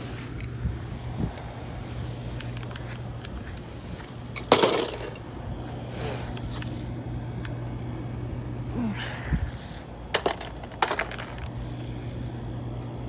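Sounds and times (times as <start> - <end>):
low hum: 0.0 - 13.0
plastic model crashing on ground: 4.4 - 5.1, 10.2 - 11.5
plastic pieces clattering: 10.2 - 11.6.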